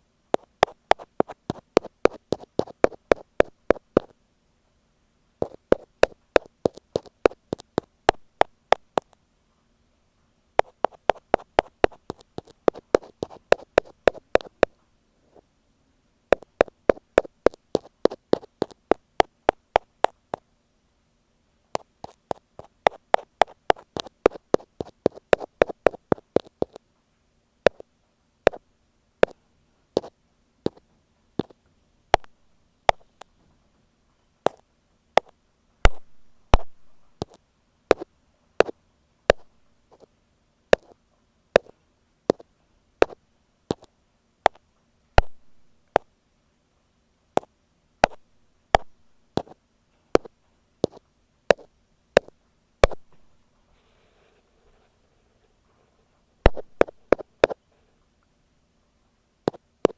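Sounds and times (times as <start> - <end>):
ear pick tapping on microphone: 0.4 - 4.1, 5.4 - 9.2, 10.6 - 14.8, 16.3 - 20.4, 32.2 - 33.3, 35.2 - 38.0, 39.3 - 40.0, 40.8 - 41.0, 43.0 - 43.9, 45.2 - 46.1, 48.0 - 48.2, 48.8 - 49.6, 50.2 - 53.3, 56.5 - 57.6.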